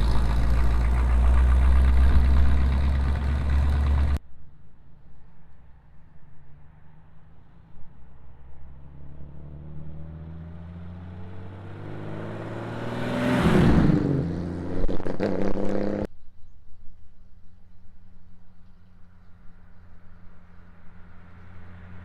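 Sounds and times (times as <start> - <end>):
exhaust cracks: 0.0 - 4.2
car driving past: 8.2 - 16.1.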